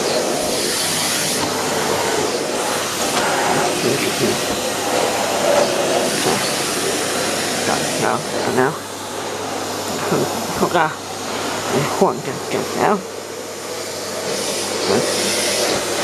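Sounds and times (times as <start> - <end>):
vacuum cleaner running: 0.0 - 16.0.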